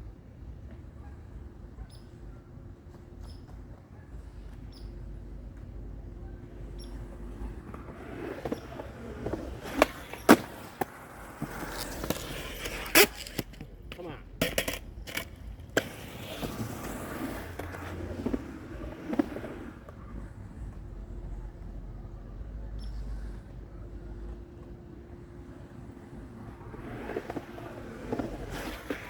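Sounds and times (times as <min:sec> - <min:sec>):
skateboard wheels rolling: 0:00.0 - 0:29.0
skateboard clacks: 0:02.8 - 0:20.9, 0:25.4 - 0:29.0.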